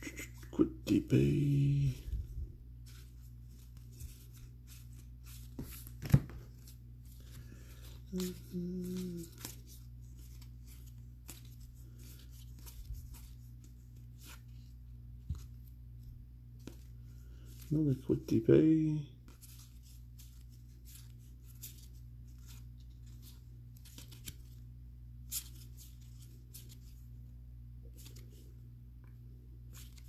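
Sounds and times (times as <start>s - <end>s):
steady low hum: 0.0s - 30.0s
cards clicking and rustling: 2.9s - 15.7s, 19.3s - 24.6s.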